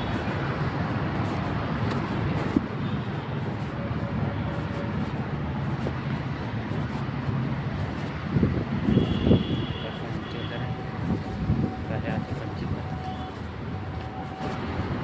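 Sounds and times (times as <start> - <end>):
vehicle and road noise: 0.0 - 15.0.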